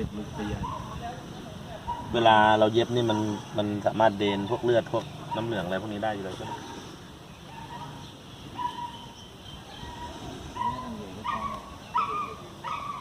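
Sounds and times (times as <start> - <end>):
dog whimpering: 9.8 - 13.0.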